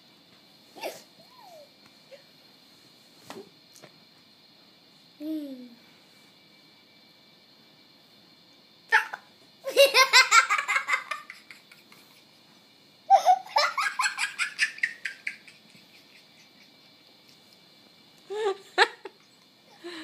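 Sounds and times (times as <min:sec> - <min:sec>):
child laughing: 0:09.0 - 0:12.0, 0:13.1 - 0:16.8.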